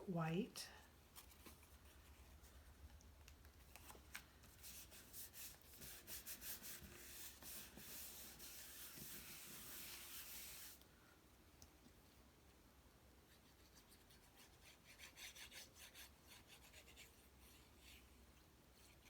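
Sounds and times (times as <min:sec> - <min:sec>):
cardstock rubbed by hand: 0:04.5 - 0:10.8.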